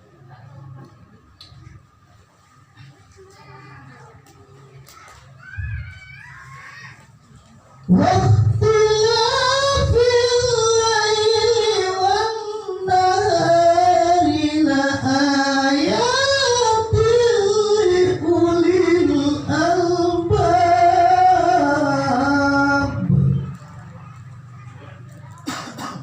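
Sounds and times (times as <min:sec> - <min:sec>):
person chanting melodic recitation: 0:07.9 - 0:23.7.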